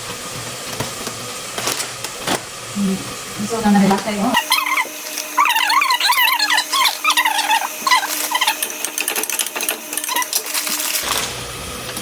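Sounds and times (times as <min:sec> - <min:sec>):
stirring clicks and scrapes: 0:03.8 - 0:11.3.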